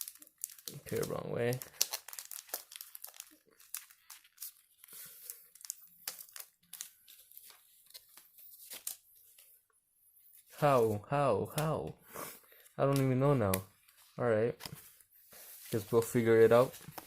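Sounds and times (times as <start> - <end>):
foil wrapper crinkling and tearing: 0.0 - 9.1.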